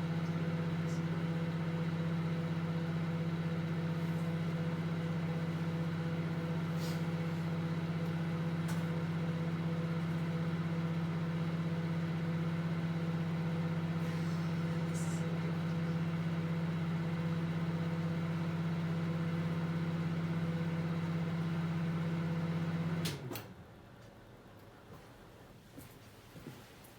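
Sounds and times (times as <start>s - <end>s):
microwave oven humming: 0.0s - 26.9s.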